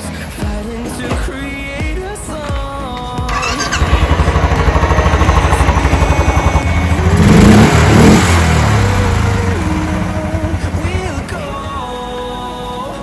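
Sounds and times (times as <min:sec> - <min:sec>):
motorcycle engine running: 0:03.2 - 0:12.7.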